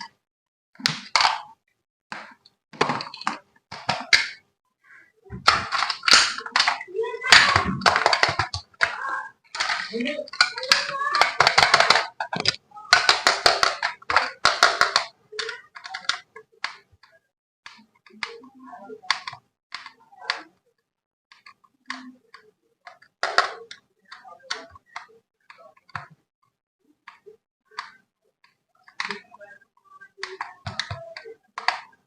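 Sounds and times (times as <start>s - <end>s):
plastic toy clicking and rattling: 5.4s - 20.5s, 21.3s - 26.2s, 27.0s - 32.0s.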